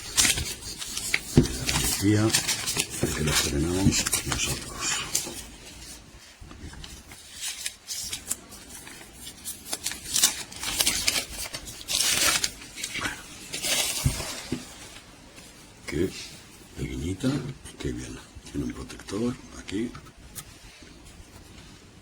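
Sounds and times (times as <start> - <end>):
packaging crinkling: 0.0 - 6.0, 6.8 - 14.6
plastic film peeling: 7.1 - 13.2.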